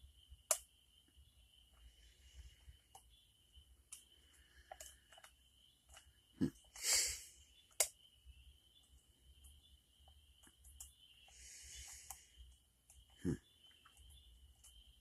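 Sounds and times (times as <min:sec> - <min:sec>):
short breathy hiss: 0:06.7 - 0:07.4.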